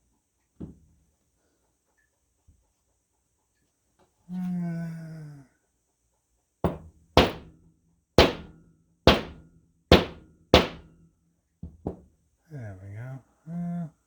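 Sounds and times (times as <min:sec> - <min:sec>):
hammer tapping on metal: 0:06.7 - 0:07.6, 0:08.2 - 0:10.9.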